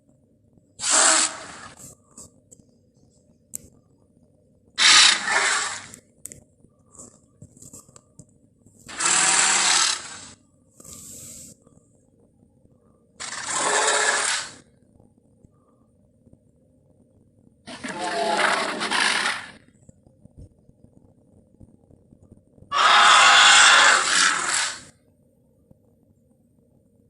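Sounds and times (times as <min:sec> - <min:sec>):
rasping creature roars: 0:04.8 - 0:05.9, 0:08.9 - 0:10.3, 0:13.2 - 0:14.6, 0:17.7 - 0:19.6, 0:22.7 - 0:24.9
faint hiss: 0:08.9 - 0:11.8.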